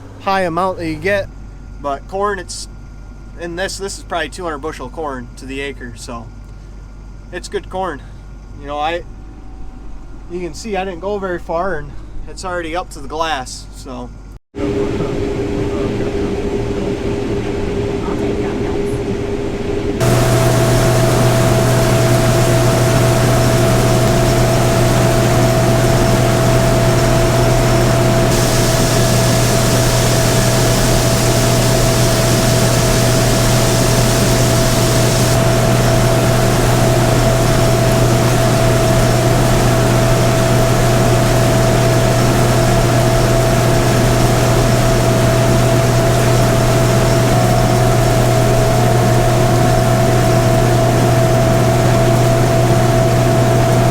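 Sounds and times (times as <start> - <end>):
combine harvester engine drone: 14.6 - 53.9
steady machine whine: 14.6 - 53.9
high hiss: 20.0 - 49.5.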